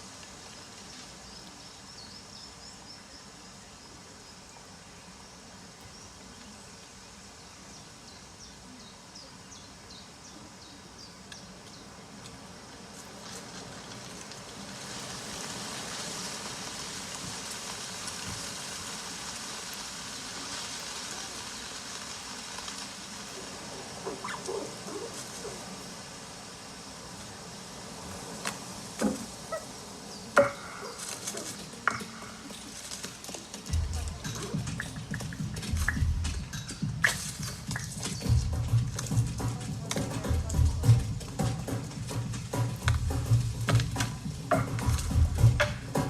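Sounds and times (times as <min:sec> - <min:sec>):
small birds chirping: 0:00.0 - 0:46.0
steady rushing noise: 0:12.6 - 0:46.0
lower bird calls: 0:19.4 - 0:46.0.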